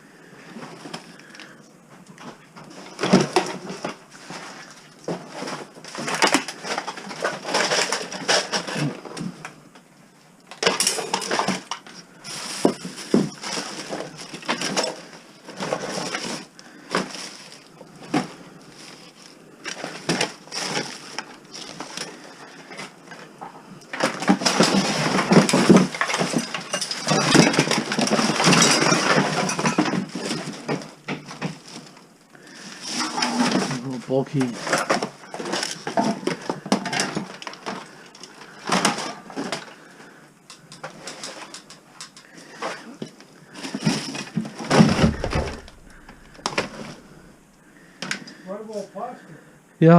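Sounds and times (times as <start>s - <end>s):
rustling: 11.2s - 40.2s, 40.8s - 48.4s
hard objects knocking and clinking: 25.3s - 31.4s.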